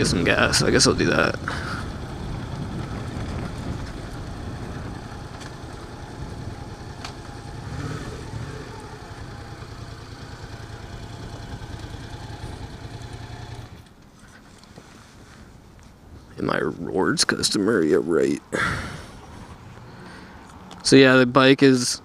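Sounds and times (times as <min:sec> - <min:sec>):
motorcycle engine running: 0:00.0 - 0:14.0.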